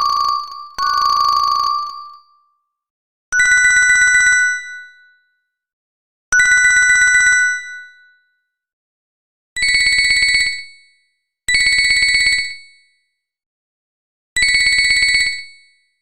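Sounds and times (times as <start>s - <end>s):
electronic trilling ringtone: 0.0s - 2.4s.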